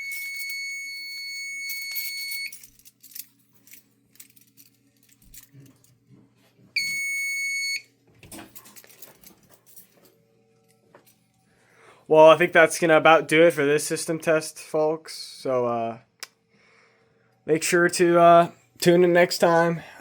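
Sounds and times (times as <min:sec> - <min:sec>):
fire alarm horn blaring: 0:00.0 - 0:02.6, 0:06.8 - 0:07.9.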